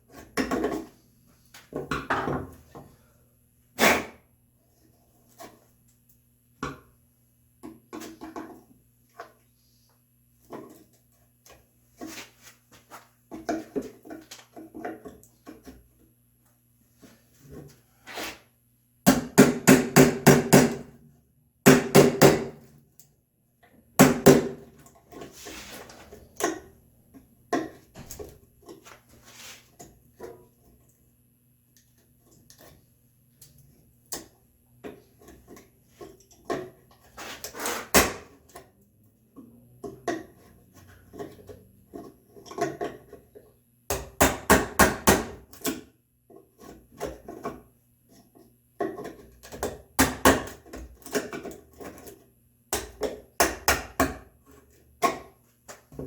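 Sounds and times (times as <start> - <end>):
chisel scraping wood: 37.1 - 38.0.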